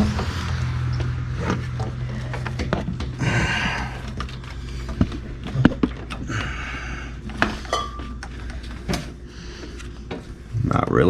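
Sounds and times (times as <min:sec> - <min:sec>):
low hum: 0:00.0 - 0:11.0
metal pipes clinking: 0:07.2 - 0:09.1.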